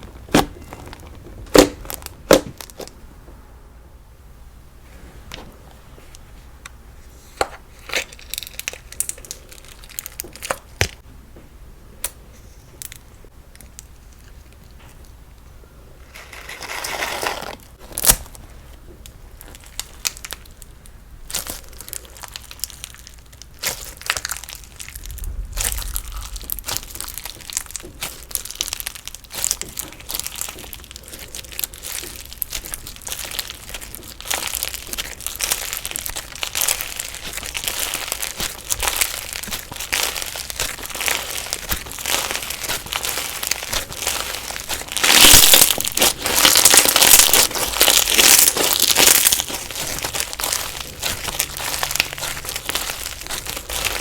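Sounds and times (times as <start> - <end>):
crunchy slime crackling and popping: 0.0 - 3.0, 7.4 - 11.0, 16.0 - 54.0.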